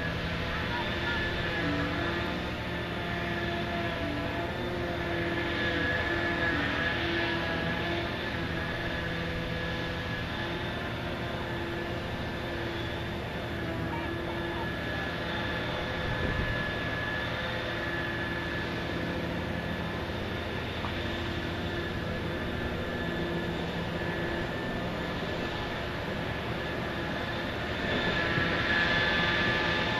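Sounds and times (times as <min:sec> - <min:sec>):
dredger machinery drone: 0:00.0 - 0:29.9.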